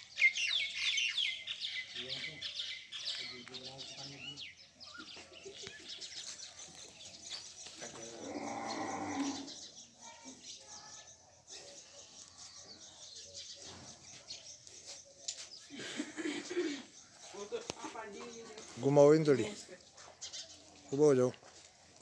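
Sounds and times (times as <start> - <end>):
cow mooing: 8.2 - 9.5.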